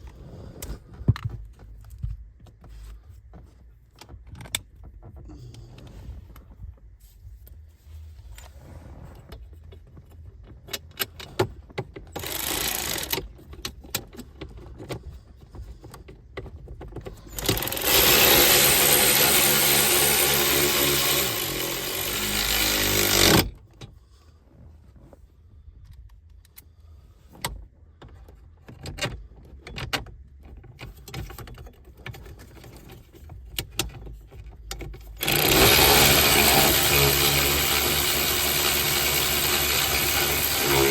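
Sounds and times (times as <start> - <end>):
handheld power tool running: 12.2 - 13.2, 17.4 - 23.5, 35.2 - 40.9.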